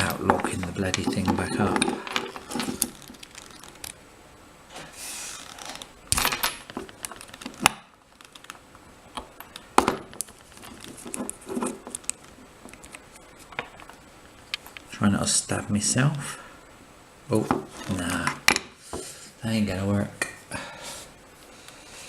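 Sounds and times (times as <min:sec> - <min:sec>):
handling noise: 0:00.0 - 0:04.0, 0:04.7 - 0:14.9.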